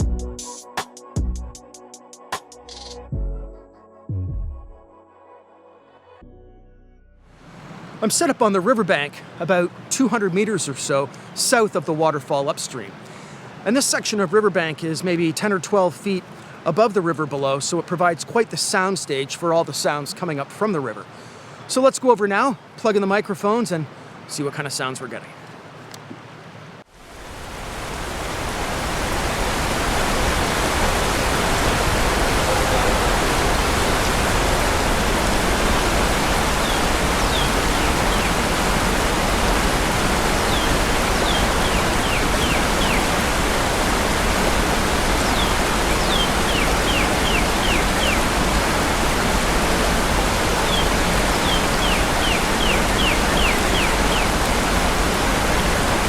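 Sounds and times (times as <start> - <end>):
creek water rushing: 7.4 - 56.0
waterfall: 7.4 - 56.0
cardinal whistling song: 36.6 - 38.3, 40.5 - 43.1, 45.2 - 48.2, 50.6 - 54.3.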